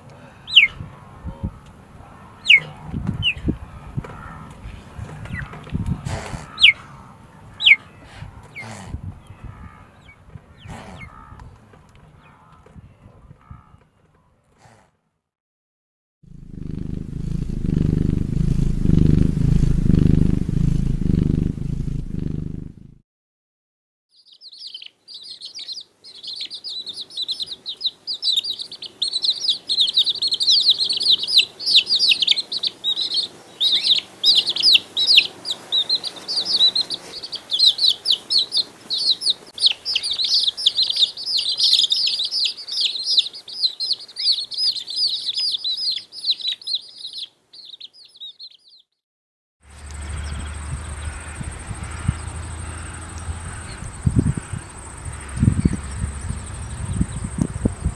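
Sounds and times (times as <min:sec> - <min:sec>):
low pulsing rumble: 0:16.3 - 0:23.0, 0:49.7 - 0:57.9
high bird chirps: 0:24.1 - 0:48.9.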